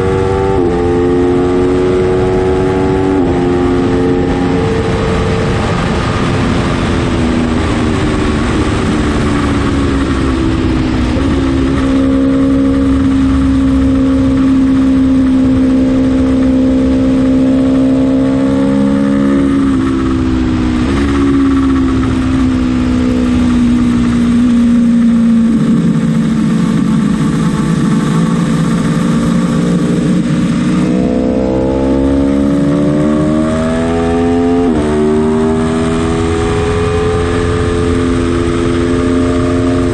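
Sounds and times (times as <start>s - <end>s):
motorcycle engine running hard: 0.0s - 39.9s
steady rush of noise: 0.0s - 39.9s.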